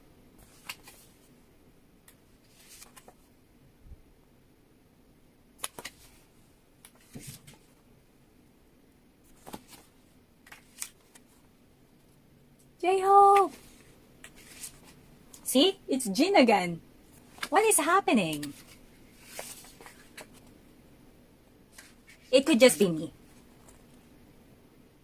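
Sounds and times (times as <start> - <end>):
photo cards clicking and rustling: 0.4 - 1.2, 2.4 - 3.2, 5.6 - 6.2, 9.3 - 11.4, 17.1 - 17.6, 18.2 - 20.5, 21.7 - 22.2.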